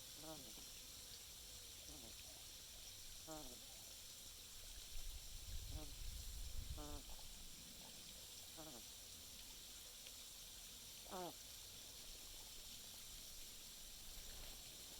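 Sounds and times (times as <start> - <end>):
duck snoring: 3.2 - 3.6, 11.1 - 11.4.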